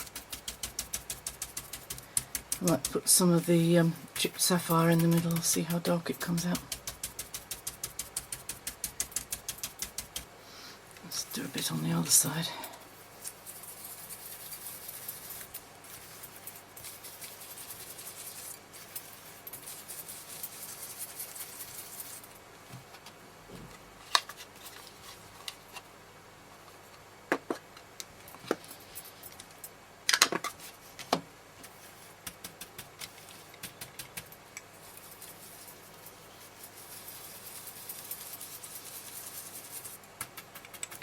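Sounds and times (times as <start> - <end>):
scratchy rubbing on card: 0.0 - 10.3, 11.2 - 22.2, 31.7 - 41.0.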